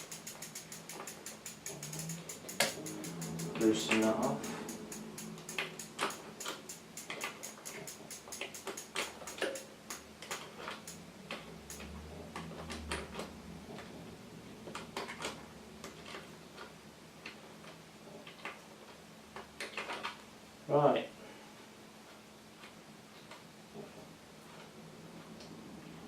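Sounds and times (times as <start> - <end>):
ratchet clicking: 0.0 - 13.0.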